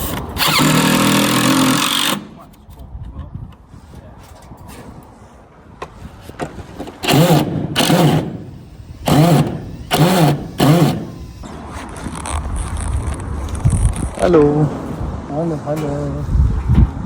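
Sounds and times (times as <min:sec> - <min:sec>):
motor revving: 0:00.0 - 0:02.3, 0:07.0 - 0:11.6
steady background noise: 0:00.0 - 0:17.0.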